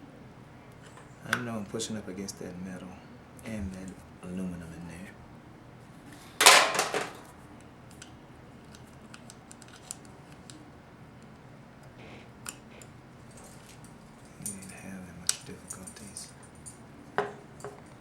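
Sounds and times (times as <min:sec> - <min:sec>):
metal parts rattling: 0:06.4 - 0:07.3.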